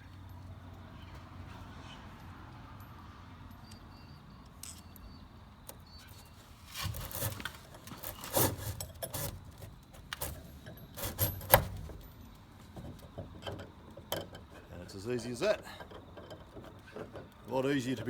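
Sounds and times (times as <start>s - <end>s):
quiet hum: 0.0s - 18.0s
metal bolt clinking and rattling: 6.9s - 18.0s.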